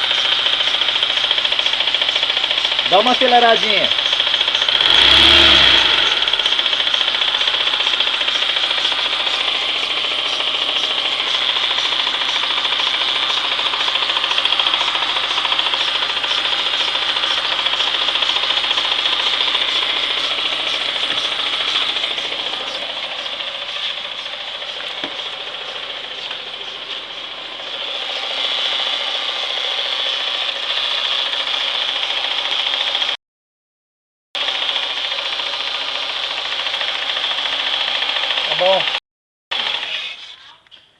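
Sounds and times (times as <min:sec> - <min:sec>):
rasping whirring gearbox noise: 0:00.0 - 0:30.7
car engine running: 0:00.0 - 0:33.2, 0:34.4 - 0:40.2.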